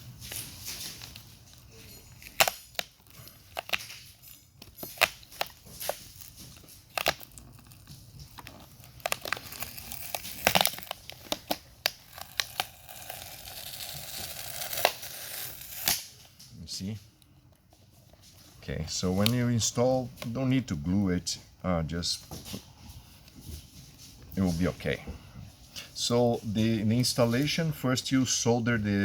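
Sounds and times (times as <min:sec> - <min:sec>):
glue cracking and snapping: 0:00.3 - 0:16.5.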